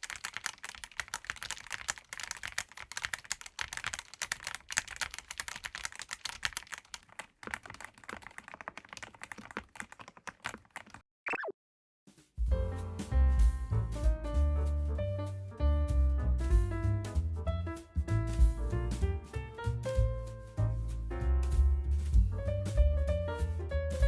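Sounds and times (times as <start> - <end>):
fast typing on mechanical keyboard: 0.0 - 11.0.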